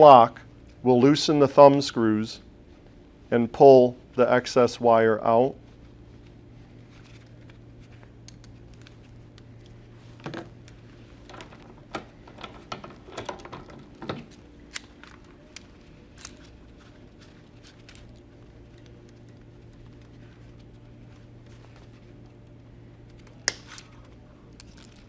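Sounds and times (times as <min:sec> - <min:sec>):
steady low hum: 0:00.0 - 0:25.0
small metallic clicks and clinks: 0:16.2 - 0:16.5, 0:17.8 - 0:18.2, 0:24.6 - 0:25.0.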